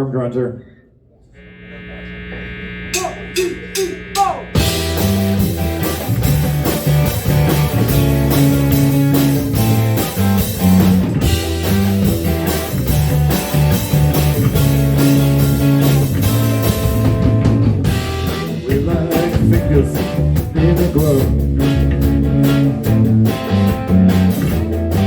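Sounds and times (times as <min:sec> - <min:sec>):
electric guitar: 0:01.4 - 0:25.0
drums: 0:02.9 - 0:25.0.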